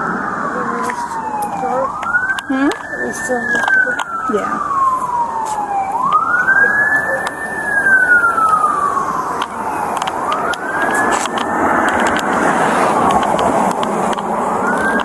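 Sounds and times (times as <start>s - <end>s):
emergency vehicle siren wailing: 0.0s - 15.0s.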